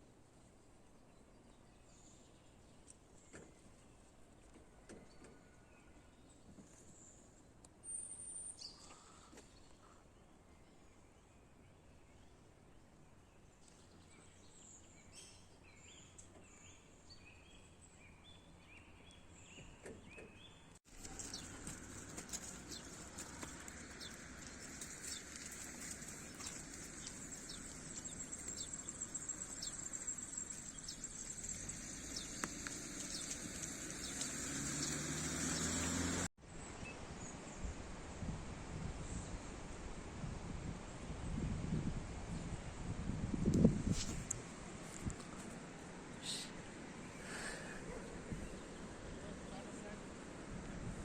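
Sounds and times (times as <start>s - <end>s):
small birds chirping: 13.4s - 37.3s
rushing outdoor noise with clicks: 19.5s - 36.3s, 43.3s - 51.0s.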